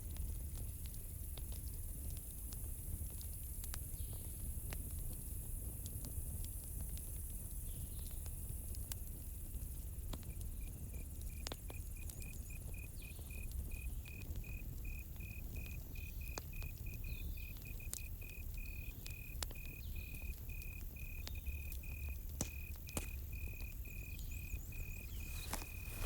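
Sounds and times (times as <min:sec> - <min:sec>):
campfire crackling and popping: 0:00.0 - 0:26.0
insect hiss: 0:06.2 - 0:26.0
cricket chirping: 0:10.3 - 0:26.0.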